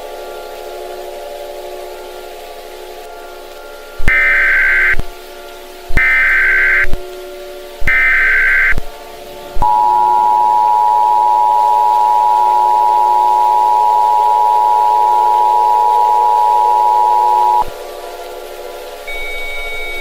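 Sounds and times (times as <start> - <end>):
low steady drone: 0.0 - 20.0
two-tone alert signal: 4.1 - 5.0, 6.0 - 6.9, 7.9 - 8.8, 9.6 - 17.7, 19.1 - 20.0.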